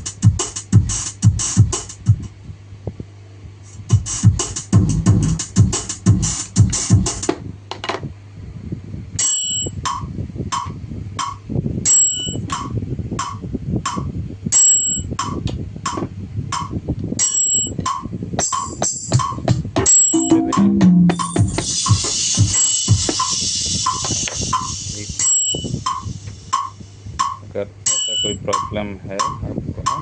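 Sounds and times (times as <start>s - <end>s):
electronic drum hits: 18.4s - 26.7s.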